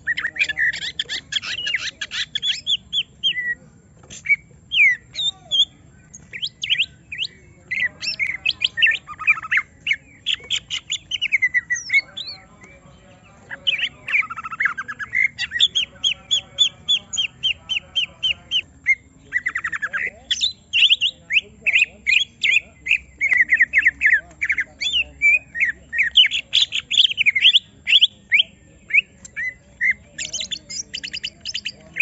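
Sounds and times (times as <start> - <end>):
bird singing fast varied song: 0.0 - 32.0.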